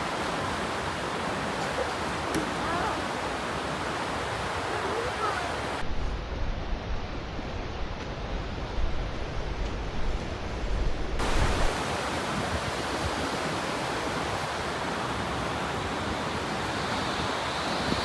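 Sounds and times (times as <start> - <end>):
surf: 0.0 - 5.8, 11.2 - 18.0
strong wind: 0.0 - 18.0.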